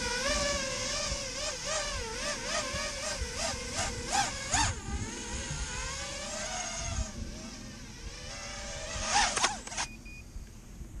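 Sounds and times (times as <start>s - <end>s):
drone propellers whining: 0.0s - 10.9s.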